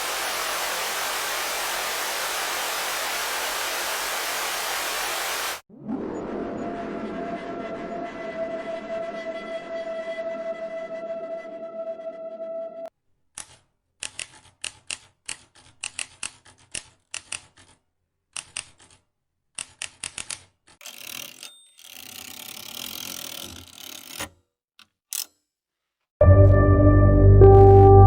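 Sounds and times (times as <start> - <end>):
hissing noise: 0.0 - 5.6
ambient music: 5.7 - 12.9, 26.2 - 28.0
sharp mechanical clicks: 13.4 - 19.0.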